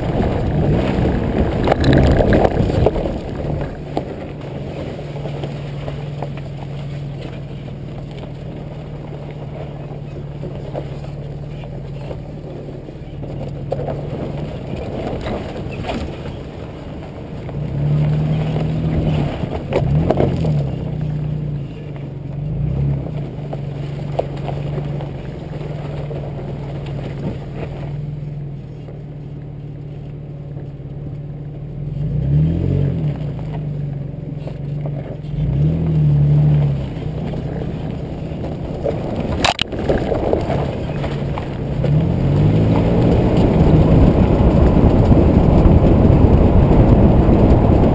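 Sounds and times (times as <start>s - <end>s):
truck knocking over track: 0.0s - 4.5s
engine revving off-road: 0.0s - 47.9s.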